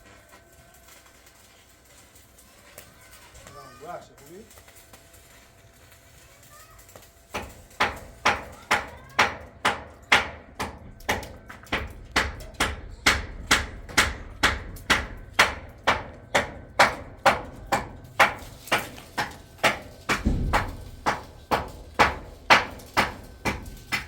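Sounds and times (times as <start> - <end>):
hammer striking metal: 7.3 - 24.0.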